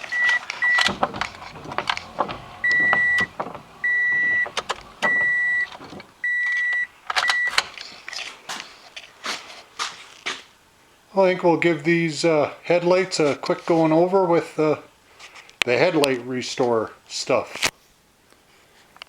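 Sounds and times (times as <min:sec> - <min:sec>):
sharp clicks and knocks: 0:00.0 - 0:07.7.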